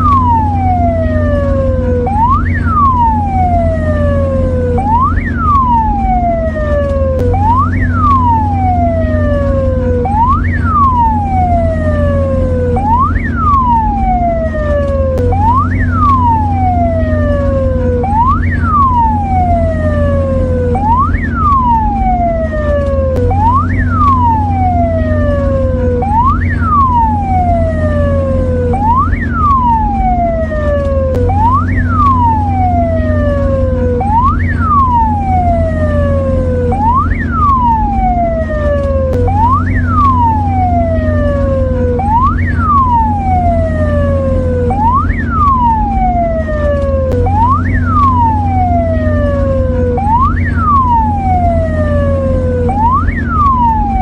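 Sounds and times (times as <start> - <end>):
ambulance siren: 0.0 - 54.0
steady low hum: 0.0 - 54.0.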